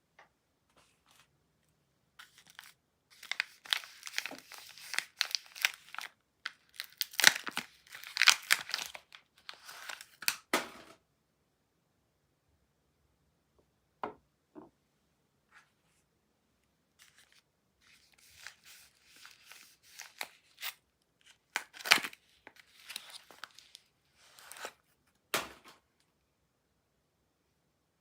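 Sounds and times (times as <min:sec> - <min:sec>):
wrapper rustling and tearing: 0:02.2 - 0:10.5, 0:17.0 - 0:24.8
wrapper snapping: 0:02.2 - 0:10.5, 0:21.5 - 0:23.7.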